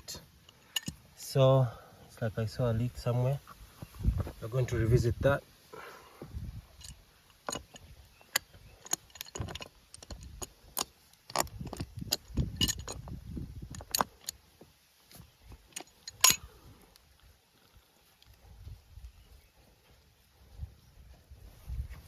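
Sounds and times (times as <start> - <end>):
rumbling handling noise: 2.5 - 5.2, 6.2 - 17.8.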